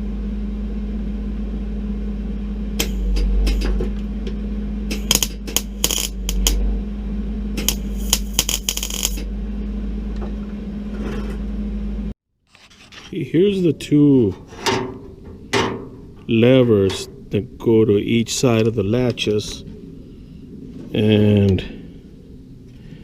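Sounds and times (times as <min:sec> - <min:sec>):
steady electrical hum: 0:00.0 - 0:23.0
crackling welding arc: 0:04.9 - 0:06.6, 0:07.6 - 0:09.3.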